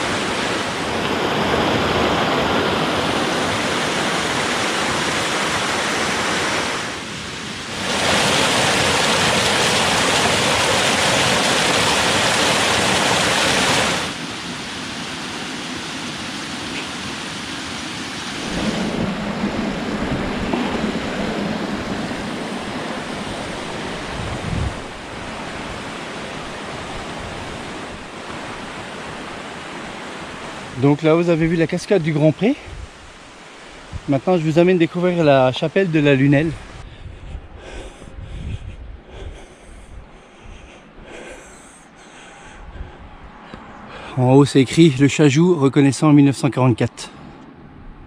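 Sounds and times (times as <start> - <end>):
waterfall rushing: 0.0 - 36.8.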